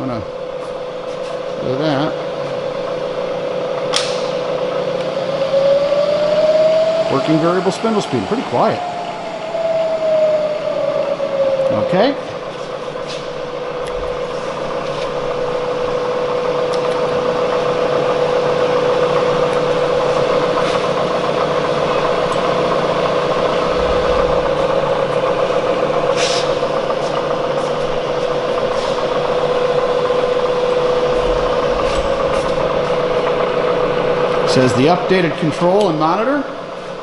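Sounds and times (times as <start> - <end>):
milling machine spindle whining: 0.0 - 37.0
single click: 3.9 - 4.3.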